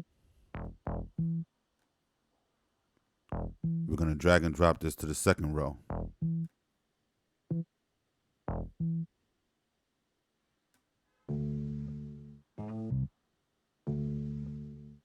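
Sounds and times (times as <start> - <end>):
low bass notes: 0.6 - 1.4, 3.3 - 6.4, 8.5 - 9.0, 11.3 - 13.1, 13.9 - 15.0.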